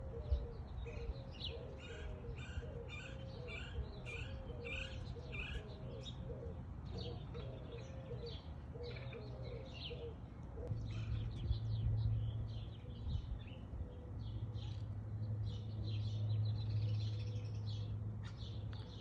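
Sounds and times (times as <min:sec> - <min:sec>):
doves cooing: 0:00.0 - 0:11.4.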